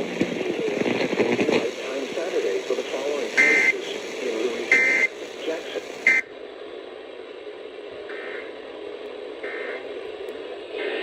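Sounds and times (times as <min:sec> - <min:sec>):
radio static: 0:00.0 - 0:06.4, 0:08.0 - 0:11.0
warbling data tone bursts: 0:03.3 - 0:04.0, 0:04.7 - 0:06.3.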